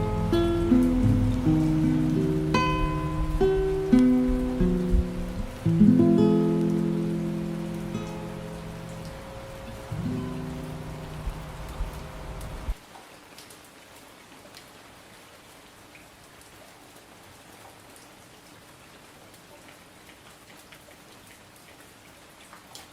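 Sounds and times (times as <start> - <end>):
guitar chord: 0.0 - 12.7
rain on a hard surface: 0.0 - 22.9.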